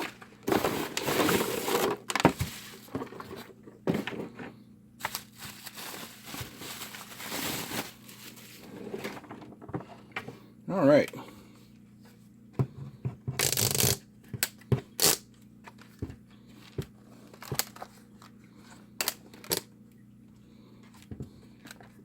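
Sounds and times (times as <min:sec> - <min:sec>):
packaging rustle: 0:00.0 - 0:03.5, 0:05.0 - 0:09.2.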